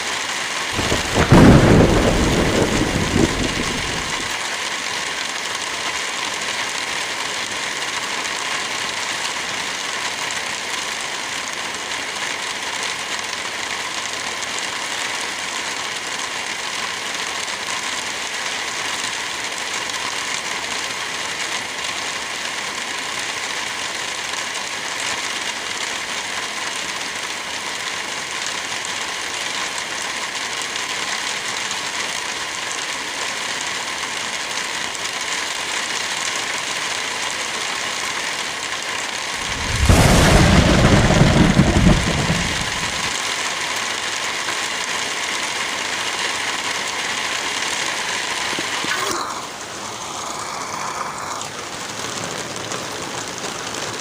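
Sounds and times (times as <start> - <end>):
light rain falling: 0.0 - 54.0
wind through trees: 0.6 - 4.4, 39.3 - 43.2.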